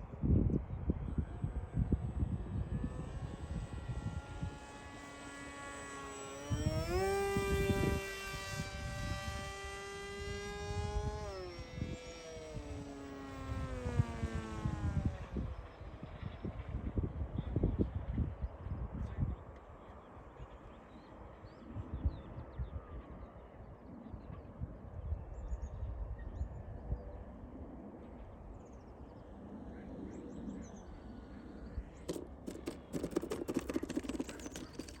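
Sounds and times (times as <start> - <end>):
wind rumbling on microphone: 0.0 - 4.9, 6.5 - 19.4
electric motor and propeller whining: 0.1 - 17.3, 28.7 - 35.0
small birds chirping: 30.3 - 35.0
knocks and rustles: 32.1 - 35.0.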